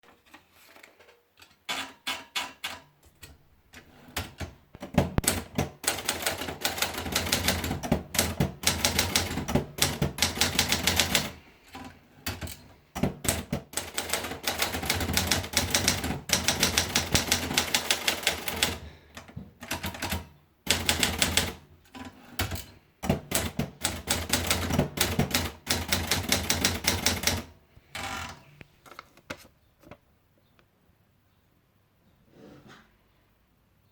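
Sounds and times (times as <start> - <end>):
typewriter keystrokes: 4.2 - 11.4, 12.3 - 28.4.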